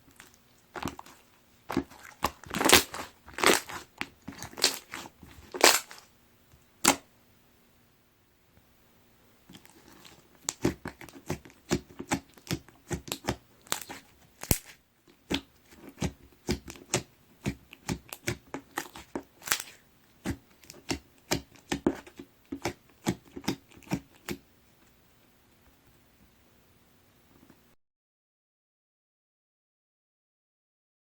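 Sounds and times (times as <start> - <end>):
slime squeezed making wet pops: 0.8 - 6.0, 15.3 - 24.4.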